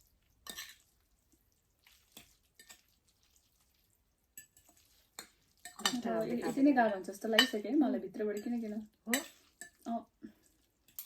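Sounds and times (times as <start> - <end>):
soft slurping: 0.0 - 5.8.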